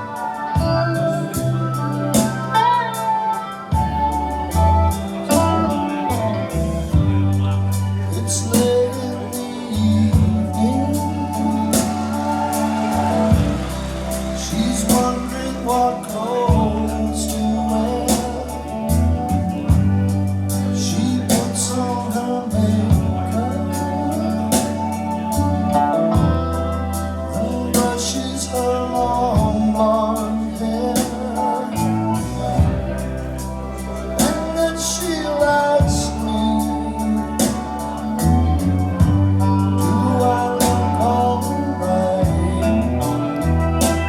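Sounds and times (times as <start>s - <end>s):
cymbal strokes: 0.0s - 29.0s
long held bass notes: 0.0s - 44.0s
music with singing over loudspeakers: 0.0s - 44.0s.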